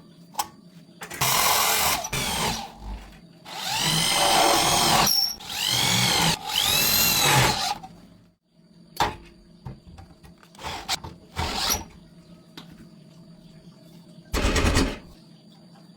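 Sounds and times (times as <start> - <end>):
power tool motor: 1.2 - 7.9, 10.6 - 11.9.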